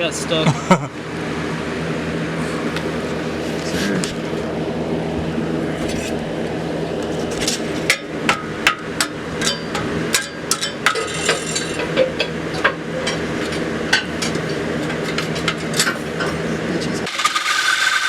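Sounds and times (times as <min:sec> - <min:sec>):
steady machine hum: 0:00.0 - 0:17.2.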